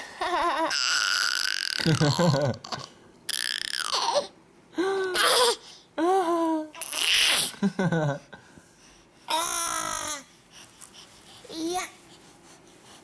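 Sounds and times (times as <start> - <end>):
baby babbling and squealing: 0.2 - 1.8.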